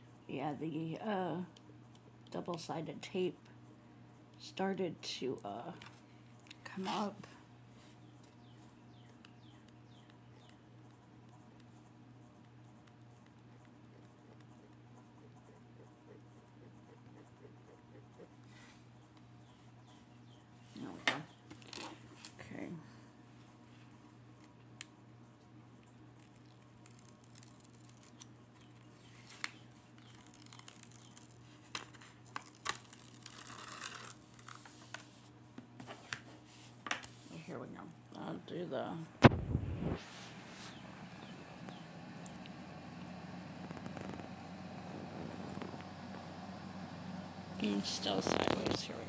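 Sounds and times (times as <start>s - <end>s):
steady low hum: 0.0s - 49.0s
plastic film rustling: 26.2s - 35.2s.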